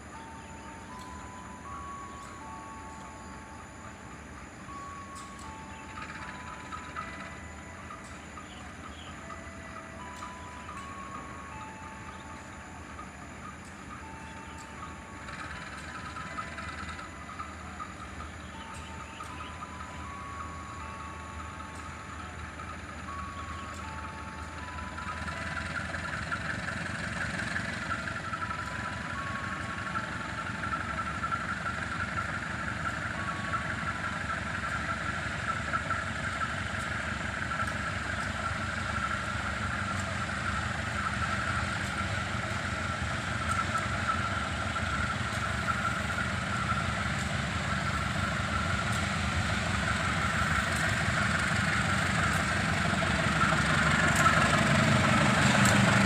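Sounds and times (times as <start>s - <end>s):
diesel locomotive engine rumbling: 0.0s - 56.0s.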